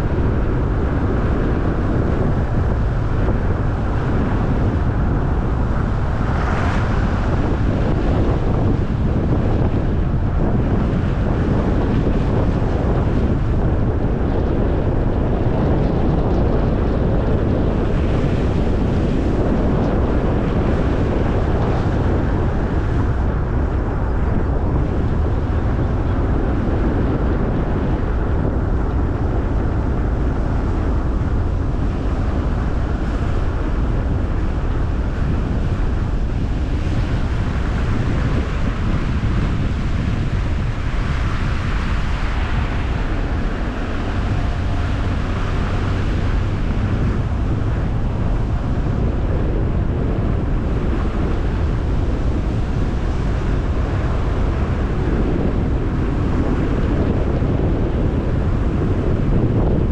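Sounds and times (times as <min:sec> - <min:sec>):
road rumble: 0:00.0 - 0:59.9
wind buffeting microphone: 0:00.0 - 0:59.9.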